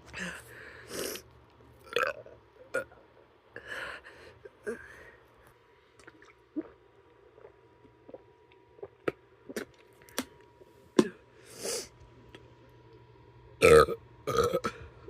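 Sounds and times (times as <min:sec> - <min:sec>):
person gulping a drink: 0:01.8 - 0:03.0, 0:06.0 - 0:11.2.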